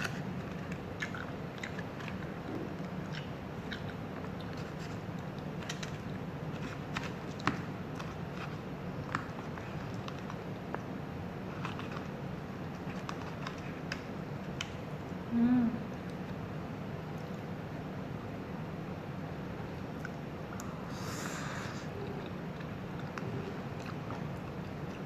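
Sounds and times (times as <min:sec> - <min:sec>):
chewing with mouth clicks: 0:00.0 - 0:10.9, 0:21.8 - 0:25.0
steady low hum: 0:00.0 - 0:25.0.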